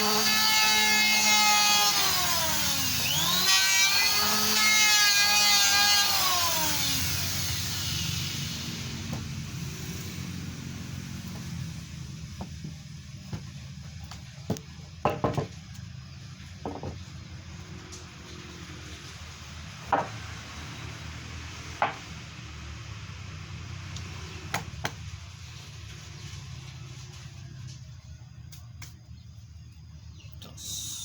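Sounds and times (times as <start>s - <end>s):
wooden knocks and taps: 14.1s - 15.6s, 16.6s - 17.0s.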